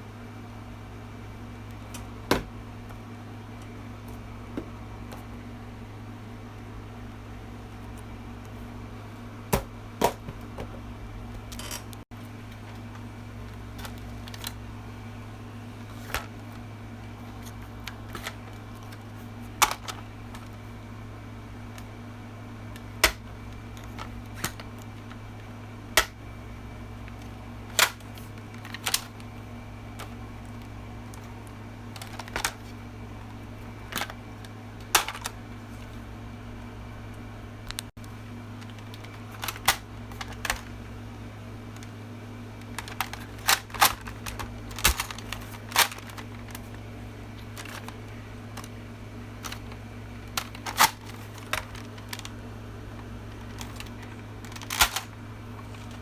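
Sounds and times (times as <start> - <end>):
steady low hum: 0.0 - 56.0
toy gun plastic clicks: 54.7 - 55.0.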